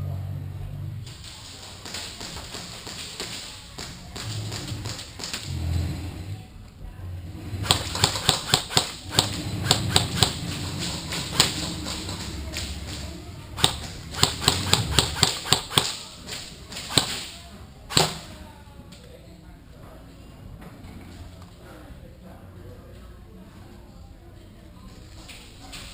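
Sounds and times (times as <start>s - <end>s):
airsoft guns firing: 7.6s - 13.0s, 13.6s - 18.4s.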